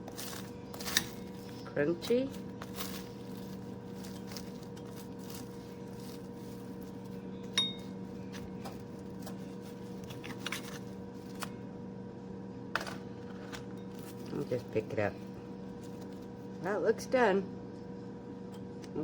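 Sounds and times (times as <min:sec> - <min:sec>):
steady low hum: 0:00.0 - 0:19.0
dishware clinking: 0:07.5 - 0:08.0.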